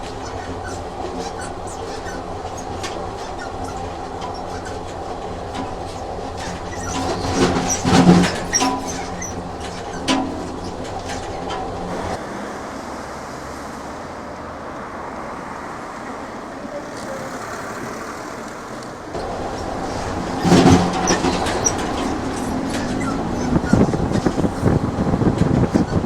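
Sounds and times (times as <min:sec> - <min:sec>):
train clatter: 0:00.0 - 0:12.2, 0:19.2 - 0:26.0
train rumbling on track: 0:00.0 - 0:14.1, 0:14.9 - 0:26.0.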